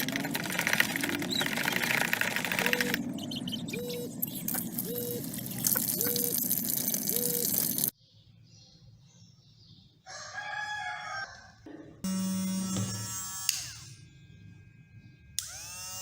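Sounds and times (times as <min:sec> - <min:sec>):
machine whirring: 0:00.0 - 0:07.9, 0:12.1 - 0:16.0
rooster crowing: 0:10.0 - 0:11.6.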